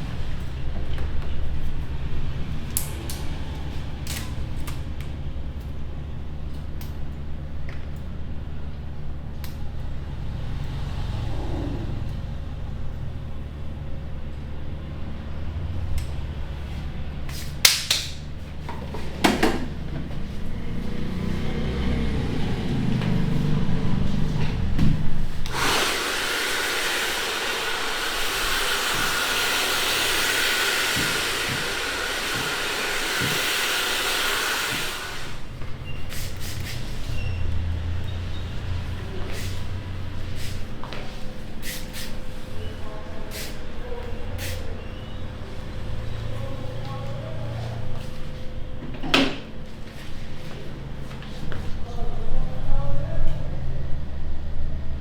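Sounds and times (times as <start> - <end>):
low rumble: 8.4 - 17.3
hair dryer blowing: 18.8 - 36.8.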